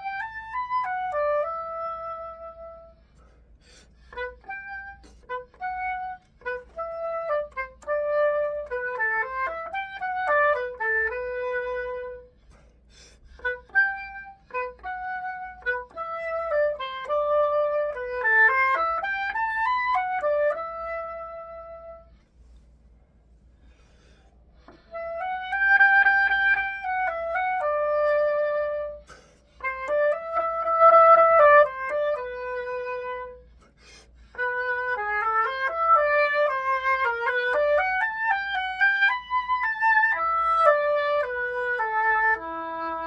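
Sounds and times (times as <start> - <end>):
solo oboe melody: 0.0 - 22.3, 24.6 - 43.0
player breathing: 12.4 - 13.4, 23.4 - 24.8, 29.0 - 29.6, 33.5 - 34.3.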